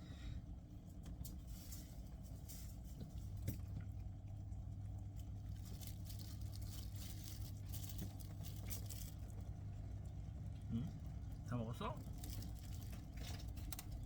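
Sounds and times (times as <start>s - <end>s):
steady low hum: 0.0s - 14.0s
pet crunching food: 1.9s - 10.7s, 12.0s - 14.0s.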